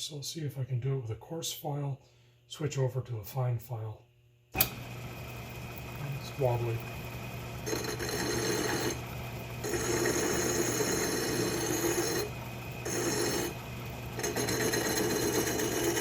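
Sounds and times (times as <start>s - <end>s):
lathe motor hum: 4.6s - 16.0s
file scraping spinning metal: 7.6s - 16.0s.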